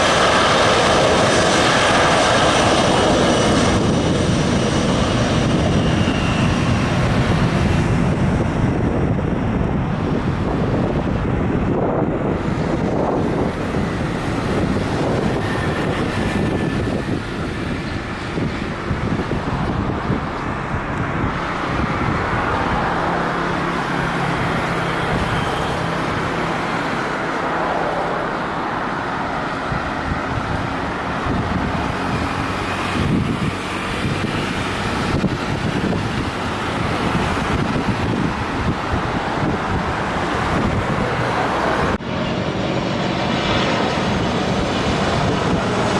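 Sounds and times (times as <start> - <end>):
jet engines roaring: 0.0 - 45.9
wind buffeting microphone: 0.0 - 45.9.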